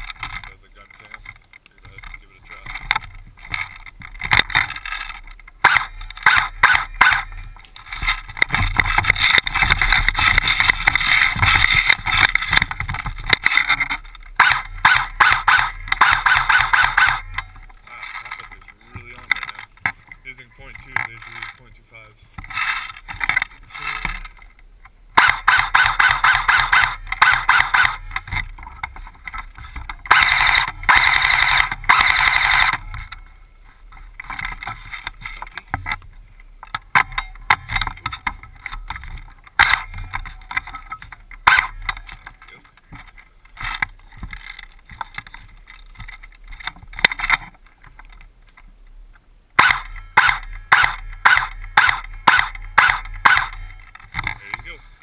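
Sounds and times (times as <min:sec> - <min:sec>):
airsoft gun firing: 0:05.6 - 0:07.3, 0:14.4 - 0:17.3, 0:25.2 - 0:28.1, 0:30.1 - 0:32.8, 0:49.6 - 0:53.6.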